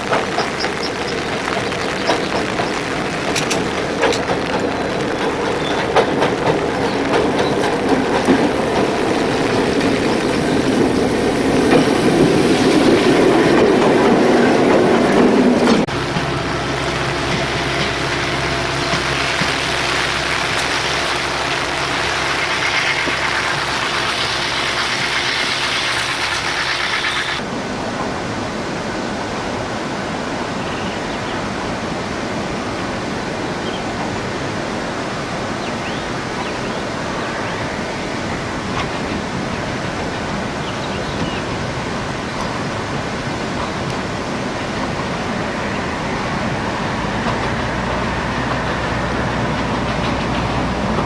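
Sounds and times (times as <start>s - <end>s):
wheels clicking on rail: 0.0s - 28.1s, 38.5s - 51.0s
train wheels rumbling on rail: 0.0s - 51.0s
diesel engine hum: 14.5s - 27.4s, 44.1s - 51.0s.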